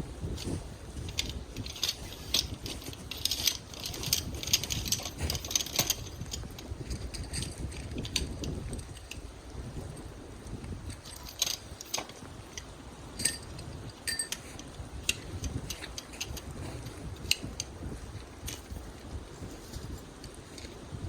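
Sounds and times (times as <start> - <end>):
metallic clinks and knocks: 0.4 - 9.2, 10.9 - 17.7.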